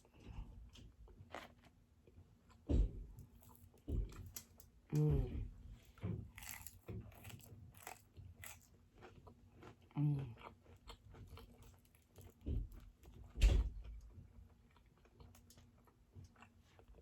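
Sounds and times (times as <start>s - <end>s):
chewing and biting food: 0.0s - 5.1s, 5.8s - 17.0s
person humming: 4.9s - 5.5s.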